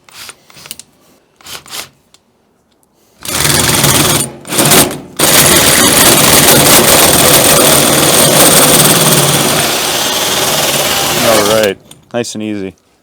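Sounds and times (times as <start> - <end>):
power drill cutting metal: 5.4 - 11.8.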